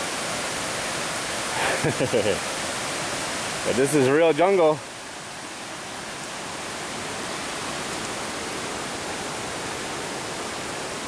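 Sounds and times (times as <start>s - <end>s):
running water rushing: 0.0s - 11.0s.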